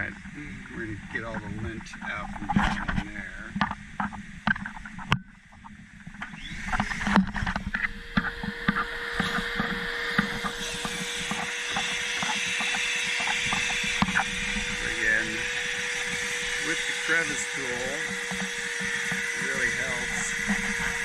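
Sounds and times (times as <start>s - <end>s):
shop vac motor humming: 6.2s - 21.0s.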